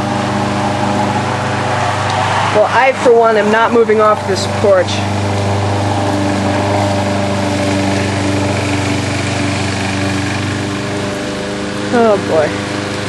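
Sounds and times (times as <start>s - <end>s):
lawn mower engine running: 0.0s - 13.0s.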